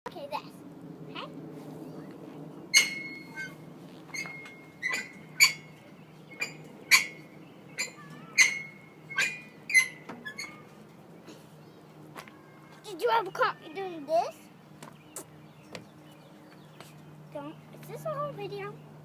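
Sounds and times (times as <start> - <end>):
metal monkey bars clanking: 2.7 - 10.8.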